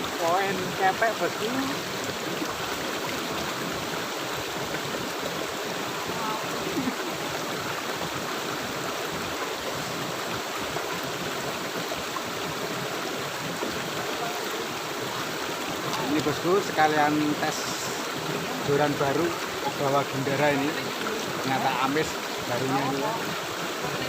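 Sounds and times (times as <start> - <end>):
river water rushing: 0.0 - 24.0.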